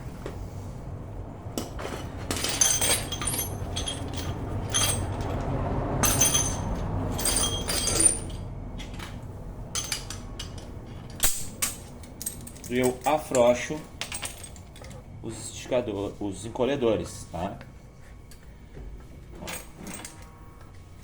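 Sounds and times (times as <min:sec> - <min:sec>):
metal tools clinking on steel: 0:01.6 - 0:15.1
ringing metallic chinks: 0:06.0 - 0:08.4.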